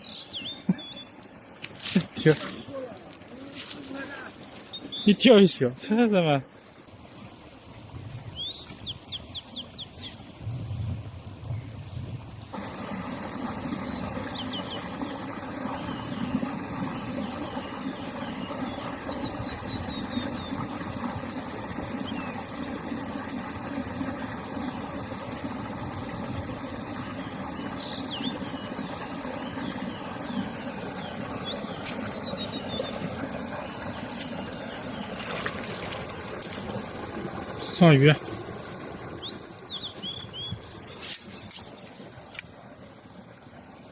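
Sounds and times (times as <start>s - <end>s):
birds chirping: 0.0s - 6.7s, 8.2s - 10.4s, 11.4s - 25.3s, 26.5s - 42.4s
steady motor hum: 10.4s - 40.6s.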